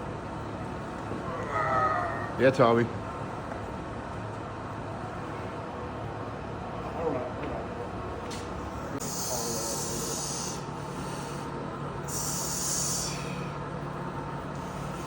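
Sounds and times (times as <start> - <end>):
steady low hum: 0.0 - 15.0
hissing strained breaths: 9.0 - 13.6.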